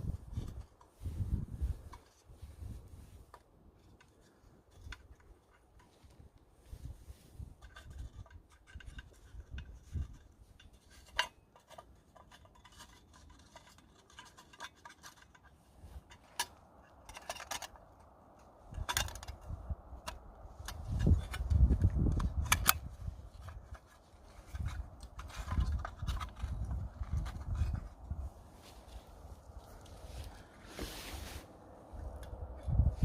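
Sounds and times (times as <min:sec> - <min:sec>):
metal camping gear clinking: 0:00.0 - 0:02.4, 0:03.2 - 0:06.6, 0:07.5 - 0:30.9
wind buffeting microphone: 0:00.0 - 0:03.3, 0:06.6 - 0:10.3, 0:18.6 - 0:31.1, 0:31.8 - 0:33.0.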